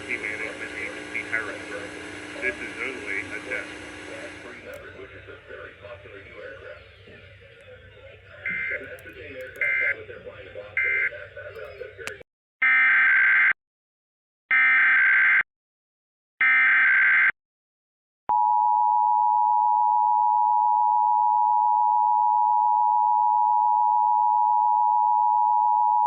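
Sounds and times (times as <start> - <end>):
two-tone attention signal: 8.4 - 8.9.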